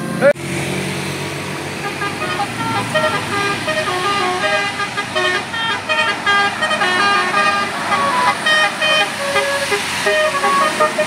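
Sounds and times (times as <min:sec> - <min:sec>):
bus musical horn tune: 0:01.8 - 0:11.0.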